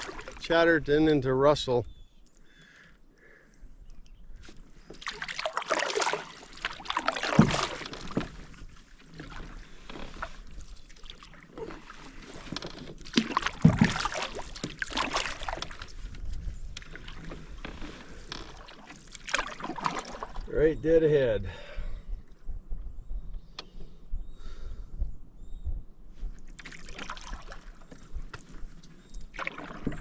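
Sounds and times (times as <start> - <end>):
paddle splashing water: 0.0 - 0.7, 4.5 - 20.5, 26.5 - 30.0
paddle knock: 5.0 - 8.6, 12.4 - 15.9.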